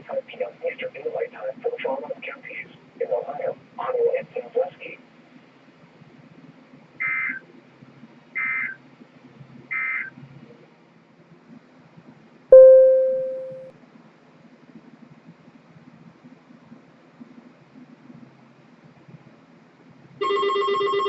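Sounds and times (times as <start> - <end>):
bell-like tone: 12.6 - 13.7.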